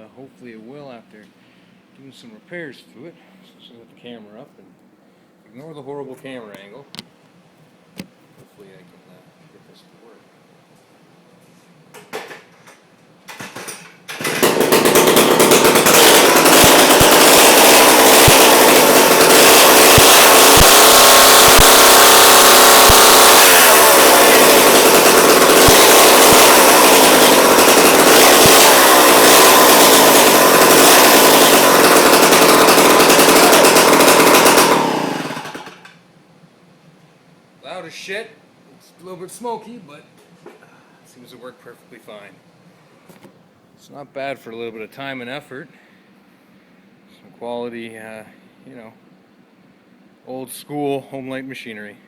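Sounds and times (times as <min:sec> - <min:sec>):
chainsaw starting and running: 0:14.1 - 0:36.0.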